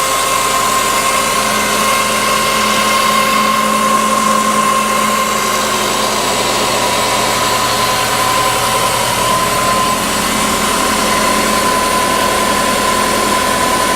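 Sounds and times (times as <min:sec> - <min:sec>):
car engine idling: 0:00.0 - 0:13.8
high-pitched belt howl: 0:00.0 - 0:13.9.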